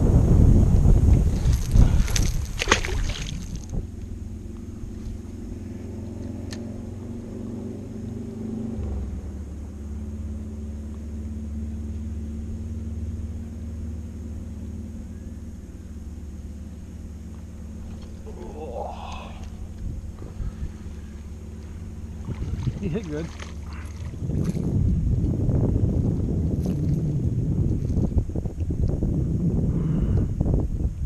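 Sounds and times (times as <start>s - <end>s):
wind buffeting microphone: 0.0s - 6.1s, 17.7s - 31.0s
boat motor humming: 0.0s - 31.0s.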